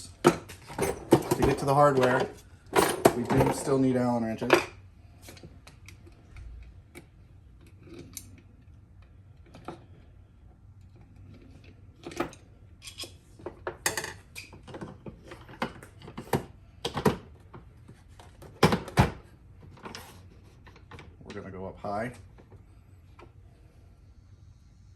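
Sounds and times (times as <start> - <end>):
metallic clicks of wrenches and screws: 12.0 - 13.2.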